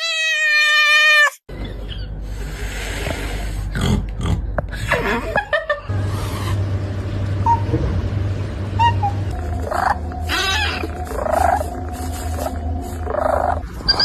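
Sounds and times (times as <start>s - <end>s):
low hum: 4.5s - 14.0s
high-pitched animal call: 8.8s - 14.0s.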